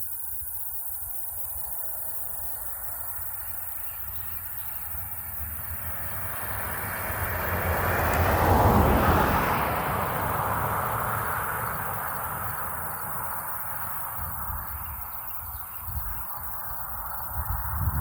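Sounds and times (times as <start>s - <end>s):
vehicle passing: 4.4s - 15.6s.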